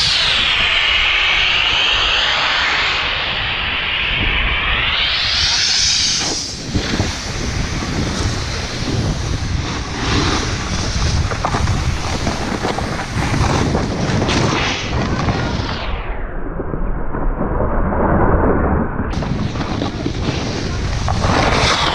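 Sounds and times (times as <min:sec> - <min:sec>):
wind rushing over microphone: 0:00.0 - 0:21.9
snowboard scraping over snow: 0:04.8 - 0:15.8, 0:19.1 - 0:21.9.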